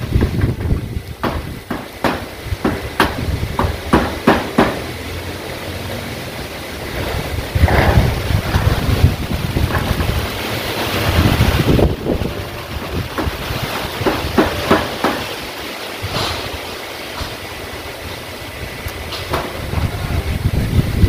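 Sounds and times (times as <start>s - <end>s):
wind buffeting microphone: 0.0s - 4.2s, 6.6s - 21.0s
sharp knocks: 0.1s - 4.9s, 12.8s - 15.4s.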